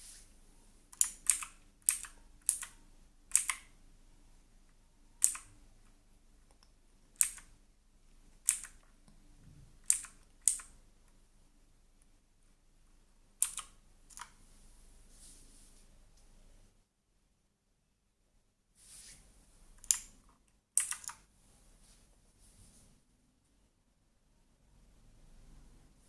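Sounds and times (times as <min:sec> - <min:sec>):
mechanical keyboard key clicks: 0:00.9 - 0:03.7, 0:05.2 - 0:05.5, 0:06.5 - 0:07.5, 0:08.4 - 0:08.8, 0:09.8 - 0:10.7, 0:13.4 - 0:14.3, 0:19.8 - 0:20.1, 0:20.8 - 0:21.2.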